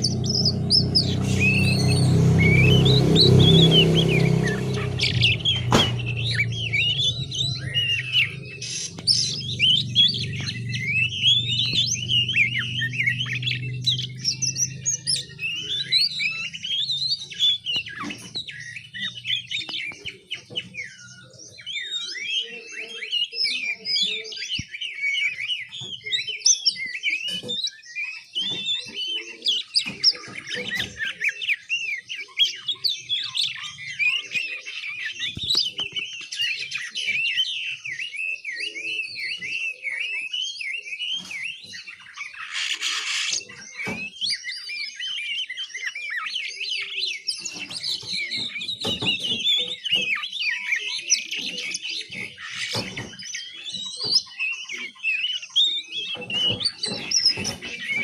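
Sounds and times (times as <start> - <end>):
low hum: 0.0 - 15.0
young bird twittering: 0.0 - 58.0.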